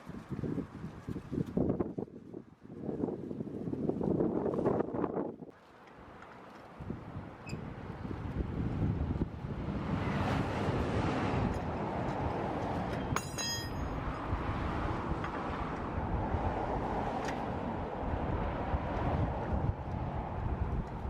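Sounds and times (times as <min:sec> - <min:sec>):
wind buffeting microphone: 0:00.0 - 0:05.6, 0:06.7 - 0:21.0
ringing metallic clink: 0:13.2 - 0:14.0.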